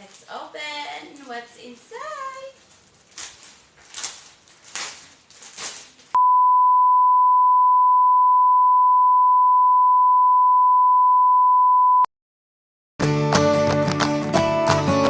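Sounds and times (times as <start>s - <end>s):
brief rustle: 2.6s - 6.2s
steady electronic beep: 6.2s - 12.1s.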